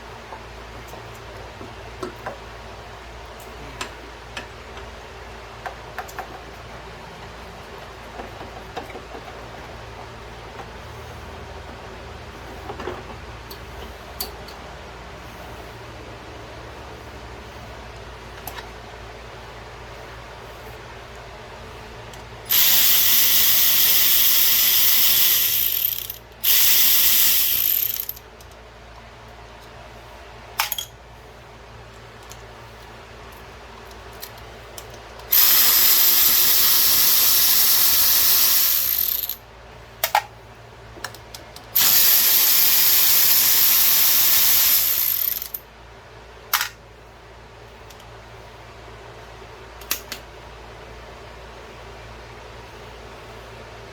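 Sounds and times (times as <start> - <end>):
power ratchet spinning: 22.5 - 28.3, 35.3 - 39.4, 41.8 - 45.6.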